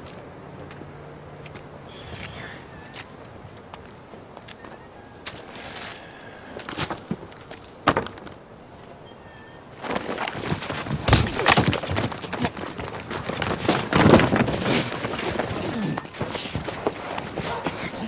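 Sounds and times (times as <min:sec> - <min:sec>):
dense clattering and thuds: 0:06.8 - 0:08.4, 0:09.9 - 0:17.7.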